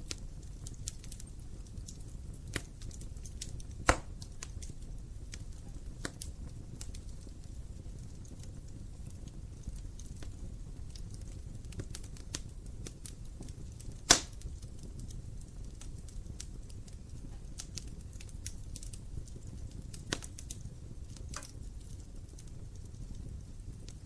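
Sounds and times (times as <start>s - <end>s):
fire popping: 0.0s - 24.0s
low rumble of flames: 0.0s - 24.0s
wood fire crackling: 0.0s - 24.0s.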